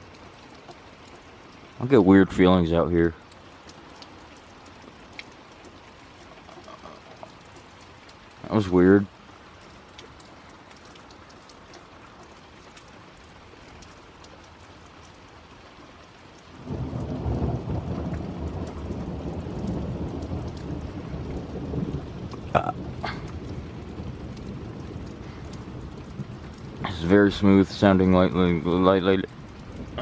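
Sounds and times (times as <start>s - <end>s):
rain falling: 0.0s - 30.0s
thunder rumbling: 16.6s - 30.0s.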